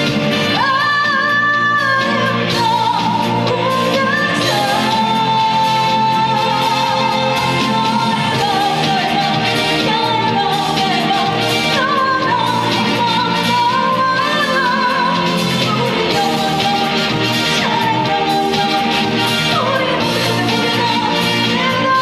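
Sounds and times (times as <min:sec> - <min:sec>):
loud backing band track: 0:00.0 - 0:22.0
woman singing with vibrato: 0:00.0 - 0:22.0.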